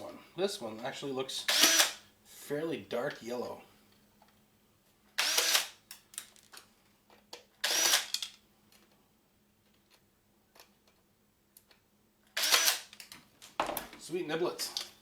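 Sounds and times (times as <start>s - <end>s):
cordless drill running: 1.5s - 2.0s, 5.2s - 5.8s, 7.6s - 8.1s, 12.4s - 12.9s.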